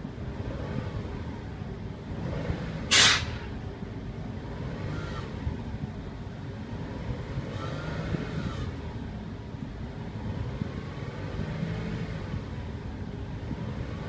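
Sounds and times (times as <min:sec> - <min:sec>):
car engine low rumble: 0:00.0 - 0:14.0
burst of hissing air: 0:02.9 - 0:03.5.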